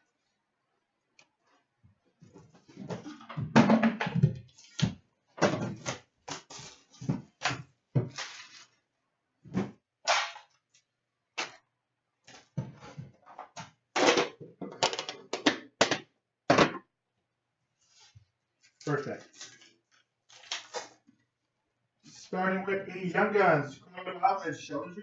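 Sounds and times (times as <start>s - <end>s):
card tin and foil packs handled: 8.1s - 8.8s.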